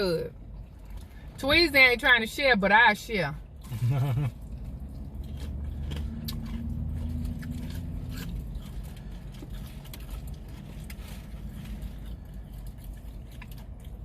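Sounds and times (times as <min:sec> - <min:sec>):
low steady hum: 0:00.0 - 0:14.0
chewing and biting chicken wing: 0:03.6 - 0:14.0.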